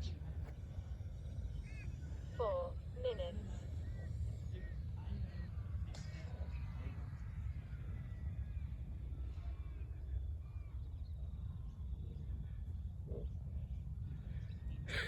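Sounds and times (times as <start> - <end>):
wind rumble on microphone: 0.0 - 15.0.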